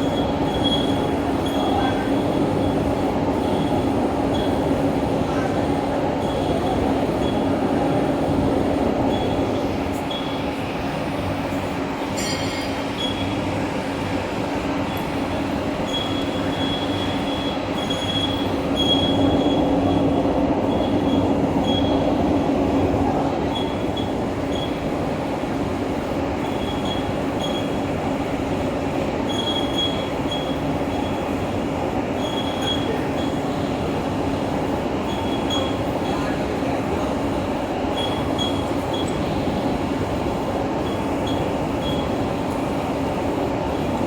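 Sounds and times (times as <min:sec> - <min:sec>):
high-pitched machine squeals: 0:00.0 - 0:02.8, 0:10.1 - 0:10.5, 0:12.2 - 0:13.4, 0:15.8 - 0:20.0, 0:20.7 - 0:22.1, 0:23.5 - 0:24.8, 0:26.4 - 0:27.8, 0:29.3 - 0:31.2, 0:32.2 - 0:33.5, 0:35.1 - 0:36.2, 0:38.0 - 0:39.2, 0:40.8 - 0:42.2.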